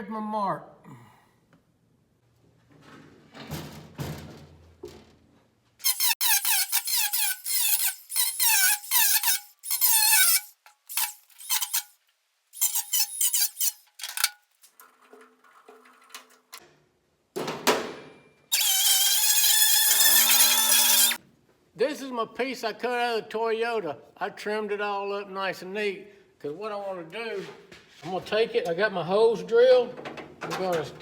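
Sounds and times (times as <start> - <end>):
sheet metal squealing under cutter: 5.8 - 11.9, 12.6 - 13.8, 18.5 - 21.2.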